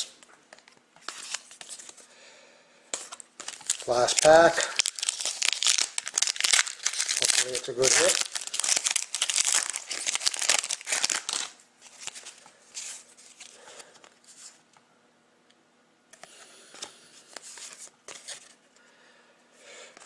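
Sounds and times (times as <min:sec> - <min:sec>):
trading cards rustling: 0:00.0 - 0:02.0, 0:02.9 - 0:14.6, 0:17.3 - 0:18.6
wrapper crinkling: 0:03.0 - 0:13.6.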